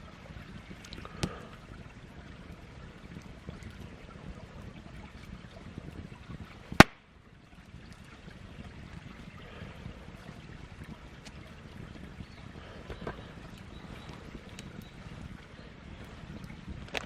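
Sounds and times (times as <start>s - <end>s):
campfire crackling: 0.0s - 8.6s, 10.2s - 17.0s
loud pop from fire: 6.8s - 7.0s.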